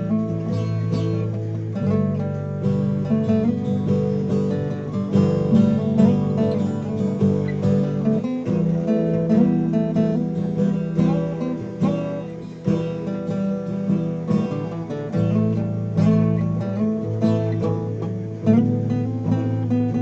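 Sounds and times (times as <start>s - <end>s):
guitar plucked and strummed: 0.0s - 20.0s.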